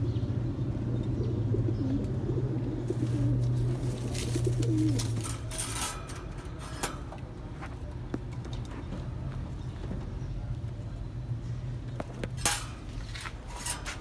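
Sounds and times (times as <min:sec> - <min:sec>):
pigeons cooing: 0:00.0 - 0:07.3
rustling and clicking: 0:02.9 - 0:07.4, 0:12.0 - 0:14.0.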